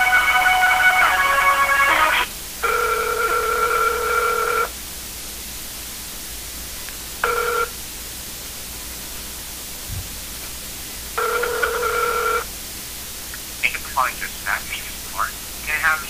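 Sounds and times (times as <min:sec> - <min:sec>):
phone line hiss: 0:00.0 - 0:04.7, 0:07.2 - 0:07.7, 0:11.2 - 0:12.5
two-pitch telephone ringing tone: 0:02.6 - 0:04.7, 0:07.2 - 0:07.7, 0:11.2 - 0:12.4.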